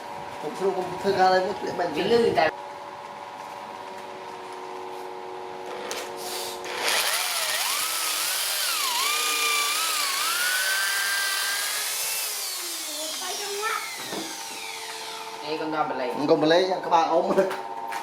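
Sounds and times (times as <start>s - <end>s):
power tool cutting wood: 5.7s - 15.6s.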